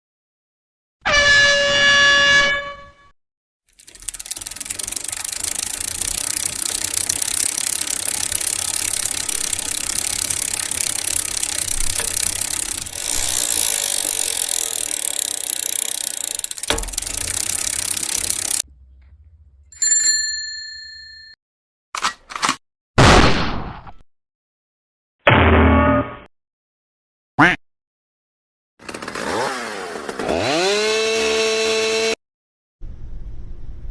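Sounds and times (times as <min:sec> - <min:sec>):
mechanical clattering and rattling: 0:03.7 - 0:19.7
bell ding: 0:19.7 - 0:21.4.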